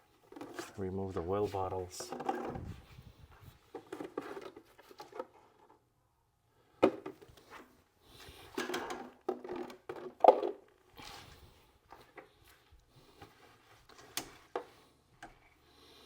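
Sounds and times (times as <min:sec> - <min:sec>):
plastic bottles clattering: 0:00.1 - 0:02.7, 0:03.6 - 0:05.9, 0:08.5 - 0:10.8.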